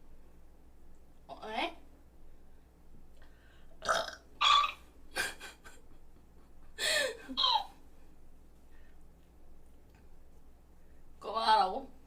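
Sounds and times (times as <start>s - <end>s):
woman making throat sounds: 3.8s - 5.4s.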